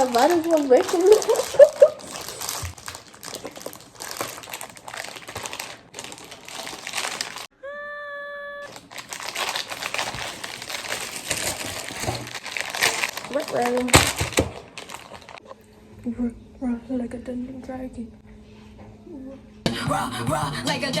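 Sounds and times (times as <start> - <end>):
plastic packaging crinkling: 0.0 - 7.5, 8.7 - 15.4.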